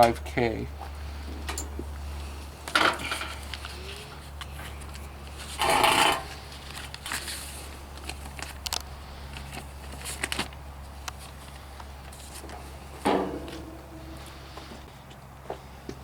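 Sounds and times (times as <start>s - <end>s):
low hum: 11.5s - 16.0s.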